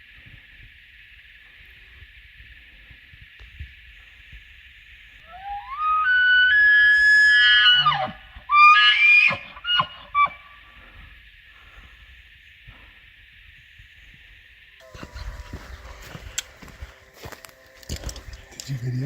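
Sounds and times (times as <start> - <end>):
elk bugling: 4.7 - 11.7, 14.8 - 19.0.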